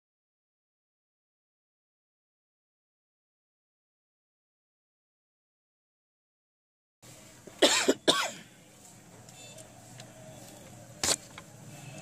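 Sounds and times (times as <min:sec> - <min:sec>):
man coughing: 0:07.6 - 0:08.5.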